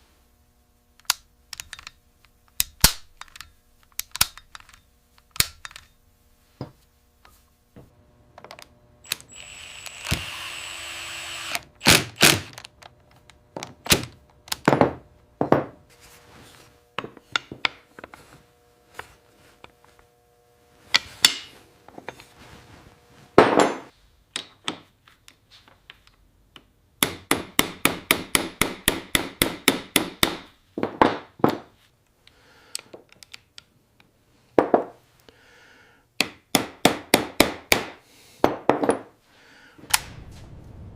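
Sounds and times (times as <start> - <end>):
hand tools knocking and tapping: 36.2 - 39.1.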